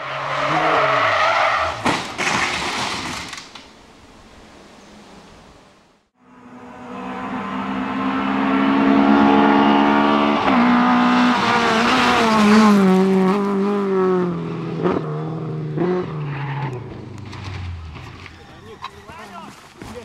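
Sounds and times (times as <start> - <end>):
rally car engine at high revs: 0.0 - 2.4, 6.3 - 18.3
sharp cracks: 1.8 - 3.8.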